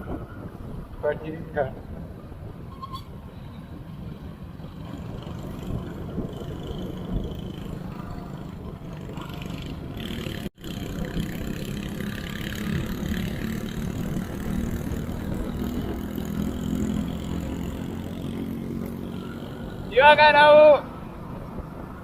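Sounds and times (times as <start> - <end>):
motorcycle engine running: 4.7 - 19.9.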